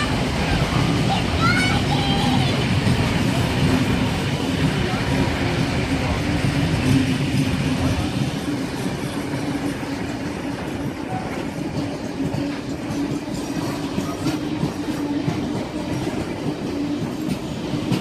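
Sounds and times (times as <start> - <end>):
train rumbling on rails: 0.0 - 18.0.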